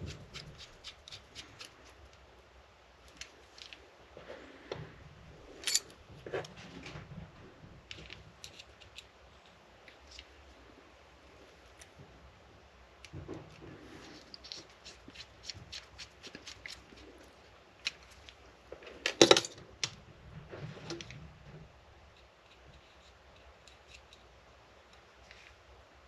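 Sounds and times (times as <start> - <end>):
small parts clicking and rattling: 5.6 - 5.9, 7.9 - 10.3, 17.8 - 20.0, 22.2 - 25.6.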